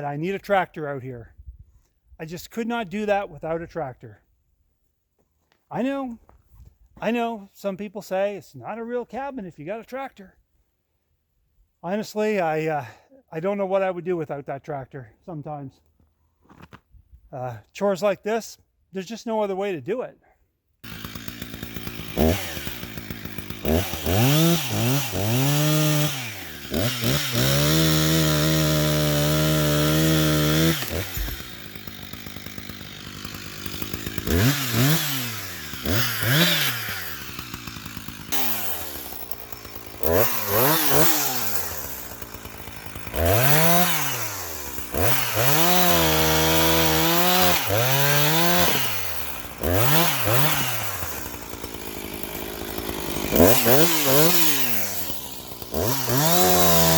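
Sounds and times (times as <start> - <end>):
chainsaw revving and cutting: 20.8 - 56.9.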